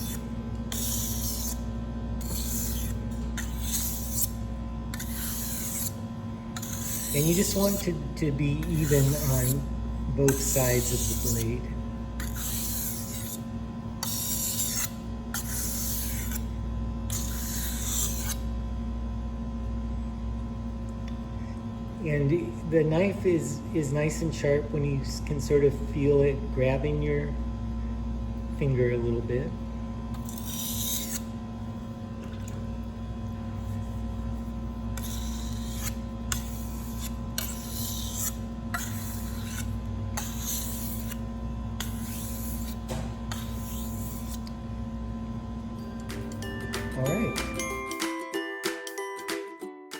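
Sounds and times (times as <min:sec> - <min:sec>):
knife scraping on whetstone: 0:00.0 - 0:16.5, 0:17.1 - 0:18.5, 0:30.1 - 0:31.4, 0:33.6 - 0:44.6
steady hum: 0:00.0 - 0:48.0.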